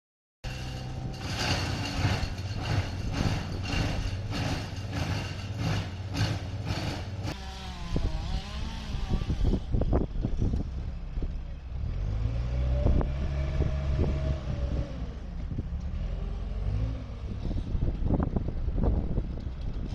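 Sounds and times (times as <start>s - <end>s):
petrol engine machinery running: 0.5s - 7.4s.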